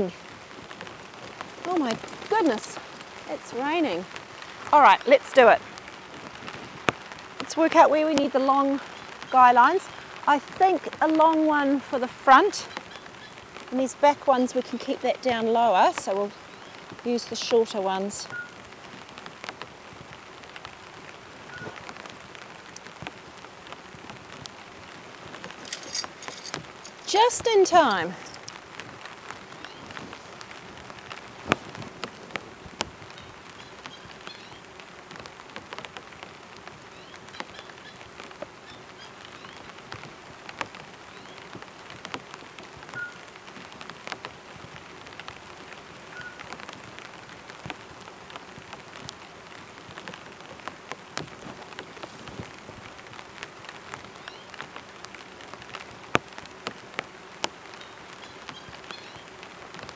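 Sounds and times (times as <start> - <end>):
steady rain: 0.0 - 59.9
drops tapping on a tarp: 21.6 - 34.2, 39.7 - 59.9.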